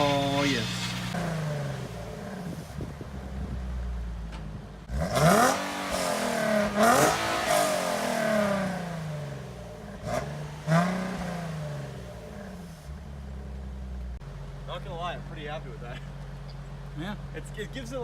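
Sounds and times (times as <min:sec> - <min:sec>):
car engine revving: 0:00.0 - 0:18.0.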